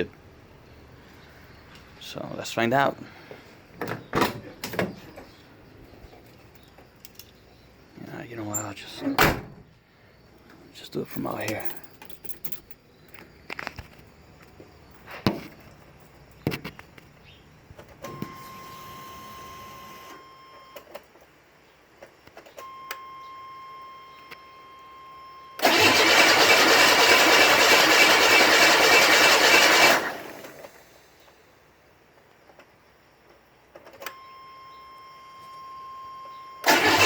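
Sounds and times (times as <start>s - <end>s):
ignition clicks: 25.6s - 27.4s, 36.6s - 37.0s
engine cranking by starter: 25.6s - 30.9s, 36.6s - 37.0s.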